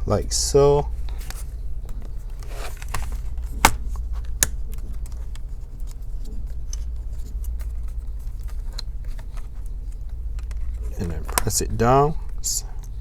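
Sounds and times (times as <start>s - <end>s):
steady low hum: 0.0s - 13.0s
plastic parts clicking: 7.5s - 11.6s.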